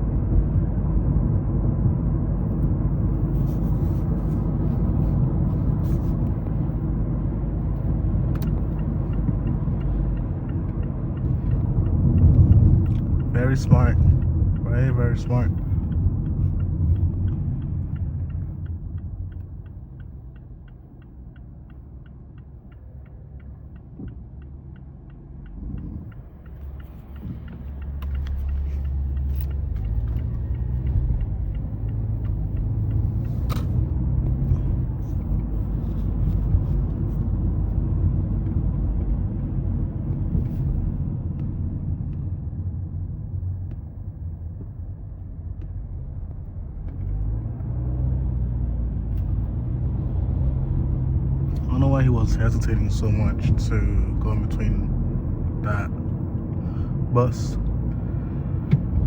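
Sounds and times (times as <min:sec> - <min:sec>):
car engine and road rumble: 0:00.0 - 0:59.0.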